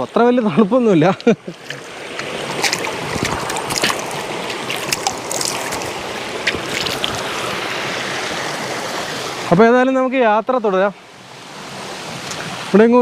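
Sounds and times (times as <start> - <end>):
stream running over rocks: 0.0 - 13.0
splashy water gurgles: 1.5 - 9.6.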